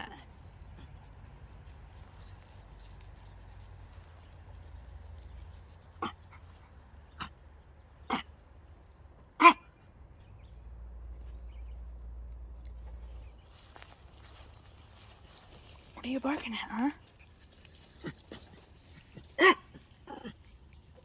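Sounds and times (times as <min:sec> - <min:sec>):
dog barking: 0:09.4 - 0:09.7, 0:19.4 - 0:20.3.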